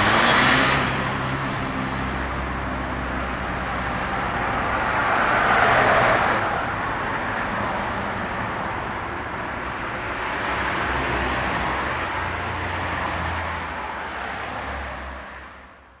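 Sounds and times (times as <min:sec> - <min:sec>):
cars driving past: 0:00.0 - 0:15.7.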